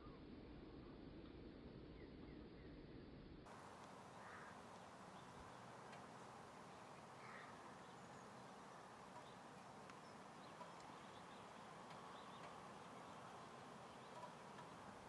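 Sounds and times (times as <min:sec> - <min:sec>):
faint outdoor hiss: 0:00.0 - 0:15.0
faint ticks: 0:03.5 - 0:07.6, 0:08.6 - 0:15.0.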